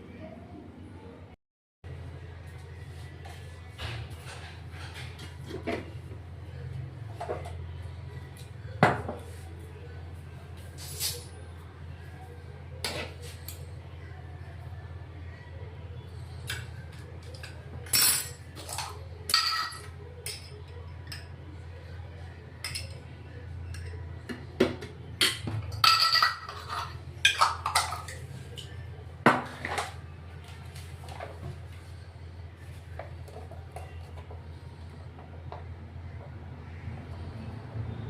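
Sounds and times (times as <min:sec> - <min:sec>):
utensils clinking against dishes: 0:10.8 - 0:11.4, 0:12.8 - 0:13.8, 0:16.4 - 0:21.5, 0:22.6 - 0:30.0.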